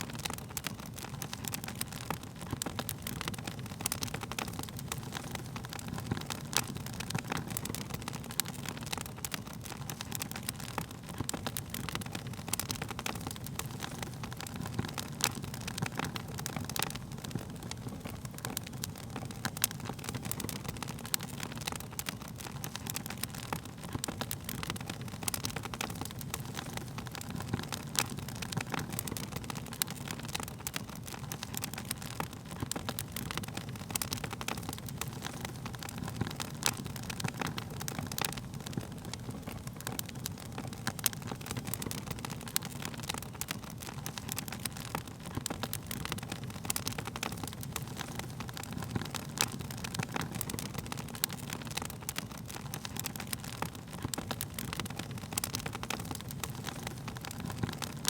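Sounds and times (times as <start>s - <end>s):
burning wood popping: 0.0s - 58.0s
flames rumbling: 0.0s - 58.0s.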